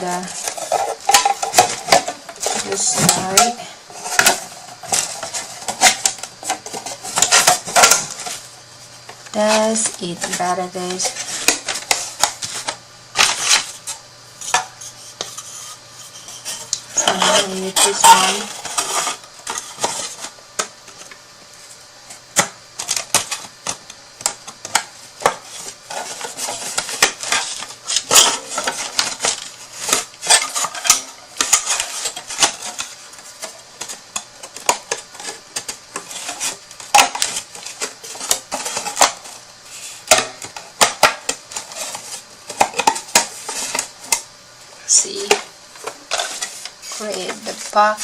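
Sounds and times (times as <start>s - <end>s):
box parts tapping and clicking: 0.3s - 3.5s, 40.1s - 44.2s.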